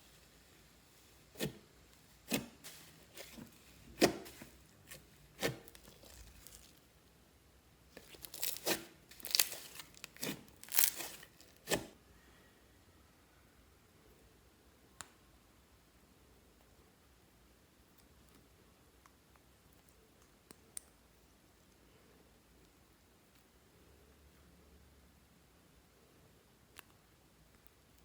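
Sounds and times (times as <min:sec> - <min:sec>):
slime crackling and tearing: 0:02.2 - 0:06.9, 0:07.9 - 0:11.9.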